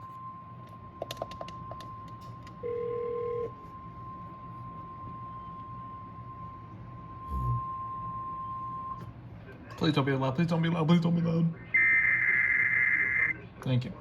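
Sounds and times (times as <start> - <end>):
low phone tone: 0.0 - 9.1
faint high whine: 0.0 - 9.6, 10.8 - 14.0.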